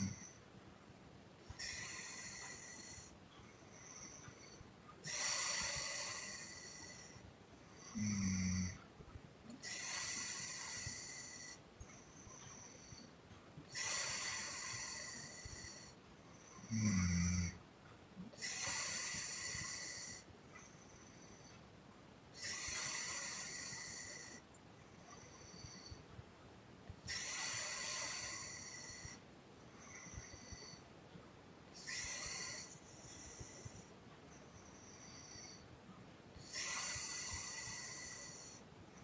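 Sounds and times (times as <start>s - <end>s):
woman snoring: 0.0s - 0.4s, 1.5s - 3.1s, 5.0s - 7.2s, 7.8s - 8.8s, 9.6s - 11.6s, 13.7s - 15.9s, 16.6s - 17.6s, 18.3s - 20.3s, 22.4s - 24.4s, 27.1s - 29.2s, 31.8s - 33.8s, 34.7s - 35.6s, 36.4s - 38.6s.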